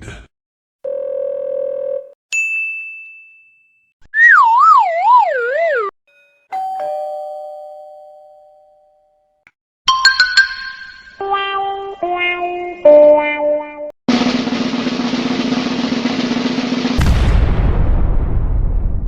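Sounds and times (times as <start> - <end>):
downward sliding whistle: 4.2 - 5.9
high ding: 9.9 - 11.2.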